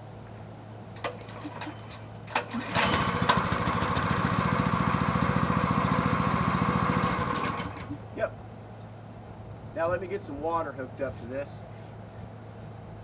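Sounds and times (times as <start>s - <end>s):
engine starting and running: 1.0s - 8.0s.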